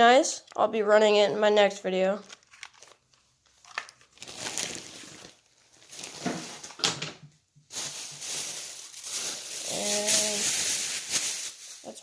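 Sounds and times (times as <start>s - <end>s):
plastic bag crinkling: 2.1s - 6.8s, 7.7s - 12.0s.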